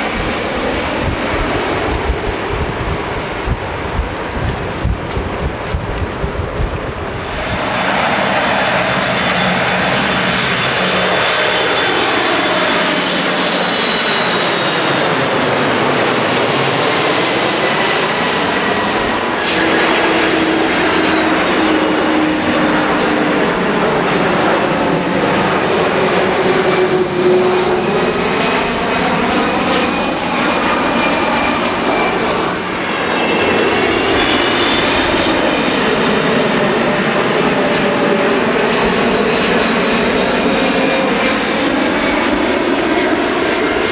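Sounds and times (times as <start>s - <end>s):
jet airliners passing overhead: 0.0s - 43.9s.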